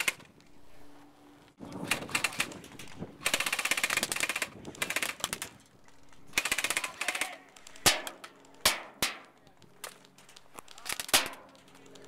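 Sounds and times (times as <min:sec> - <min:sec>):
airsoft guns firing bursts: 0:01.8 - 0:02.6, 0:03.2 - 0:05.6, 0:06.3 - 0:10.0, 0:10.7 - 0:12.0.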